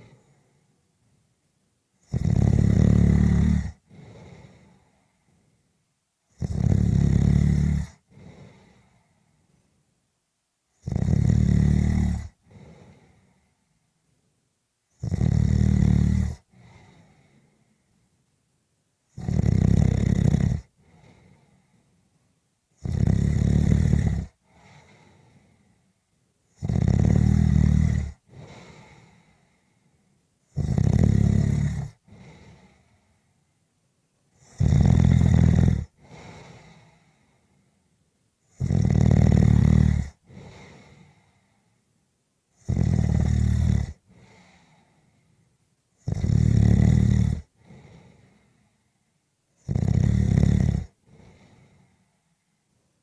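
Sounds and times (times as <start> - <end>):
person snoring: 2.0 - 4.8, 6.4 - 8.8, 10.8 - 13.0, 15.0 - 17.1, 19.2 - 21.2, 22.8 - 25.2, 26.6 - 29.2, 30.5 - 32.7, 34.4 - 37.0, 38.5 - 41.1, 42.6 - 44.7, 46.0 - 48.4, 49.6 - 51.8.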